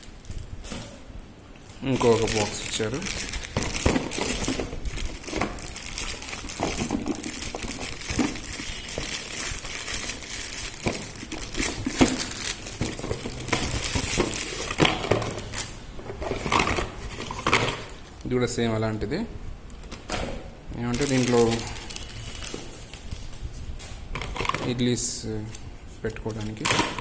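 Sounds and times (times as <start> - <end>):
plastic packaging crinkling: 1.7 - 18.3, 20.8 - 23.5.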